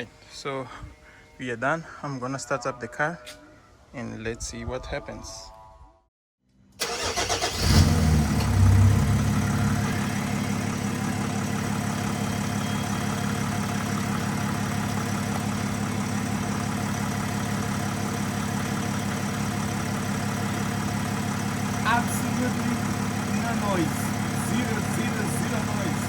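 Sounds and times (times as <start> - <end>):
diesel engine idling: 6.8 - 26.0.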